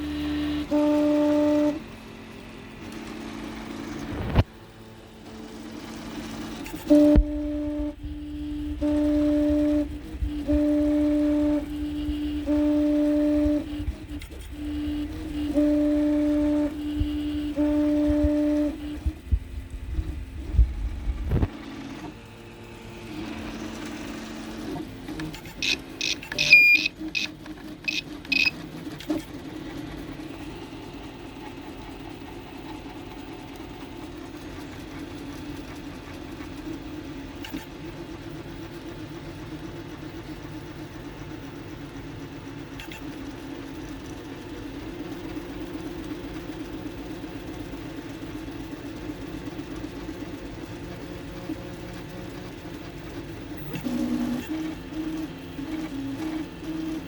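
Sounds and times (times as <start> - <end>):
stepper motors humming: 0.0 - 57.0
short high beeps: 25.6 - 28.6.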